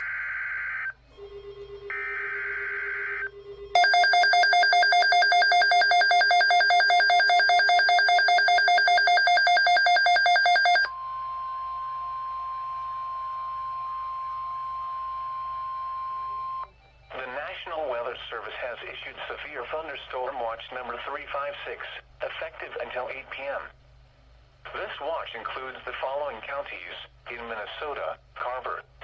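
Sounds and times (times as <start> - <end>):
rapidly pulsing alarm beep: 0.0 - 11.0
steady warning tone: 0.0 - 17.2.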